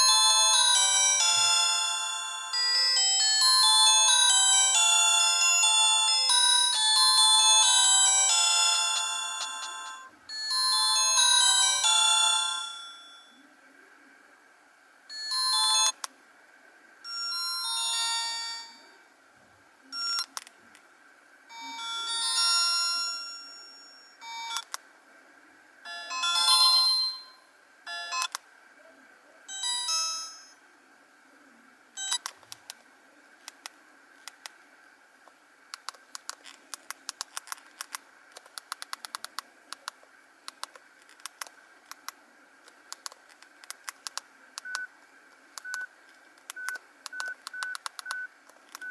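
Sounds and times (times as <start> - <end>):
phone ringtones through small speaker: 0.0 - 13.4, 15.1 - 16.0, 17.0 - 18.8, 19.9 - 20.3, 21.5 - 24.7, 25.8 - 28.4, 29.5 - 30.6, 32.0 - 32.3, 46.6 - 48.9
rapid clicks: 35.7 - 48.9.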